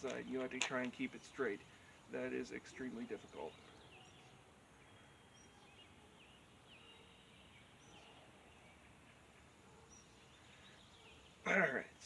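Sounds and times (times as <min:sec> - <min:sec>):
faint background noise: 0:00.0 - 0:12.0.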